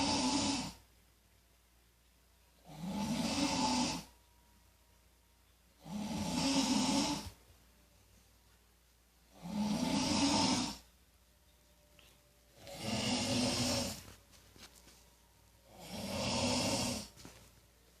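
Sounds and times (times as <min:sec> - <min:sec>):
man snoring: 0:00.0 - 0:00.8, 0:02.6 - 0:04.1, 0:05.8 - 0:07.4, 0:09.3 - 0:10.8, 0:12.6 - 0:14.0, 0:15.7 - 0:17.2.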